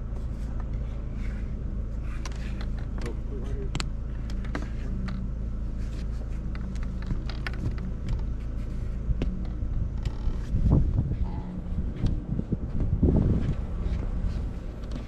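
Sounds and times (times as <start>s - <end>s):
low mechanical hum: 0.0s - 15.0s
low rumble: 0.0s - 15.0s
light clicks and knocks: 6.3s - 10.5s.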